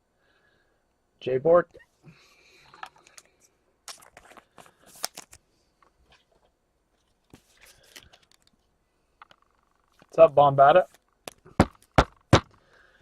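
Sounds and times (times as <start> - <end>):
cards and packaging crinkling: 3.0 - 5.5, 7.0 - 8.6.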